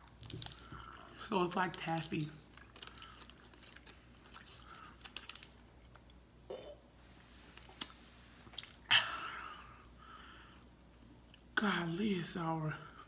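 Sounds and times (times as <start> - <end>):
chewing sticky candy: 0.0 - 6.2.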